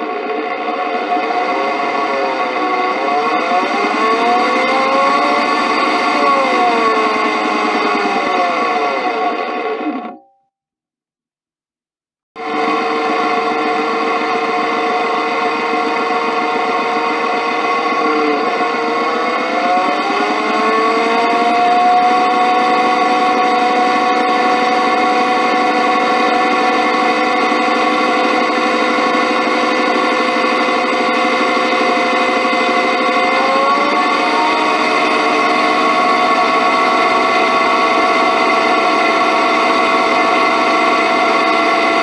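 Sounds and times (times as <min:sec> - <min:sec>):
pulleys turning under a belt: 0:00.0 - 0:10.1, 0:12.4 - 0:42.0.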